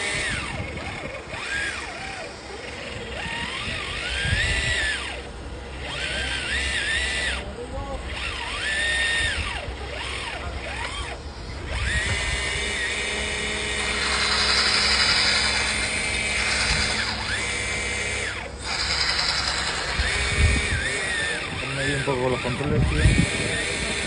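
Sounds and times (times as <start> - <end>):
hydraulic pump whining: 0.0 - 24.0
hydraulic hissing: 13.8 - 24.0.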